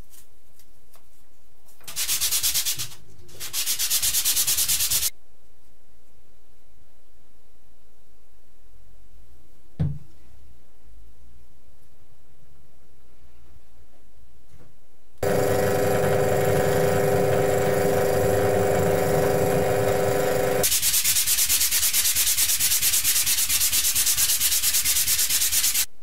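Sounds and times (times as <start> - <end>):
power sander whining and rasping: 15.2 - 20.6.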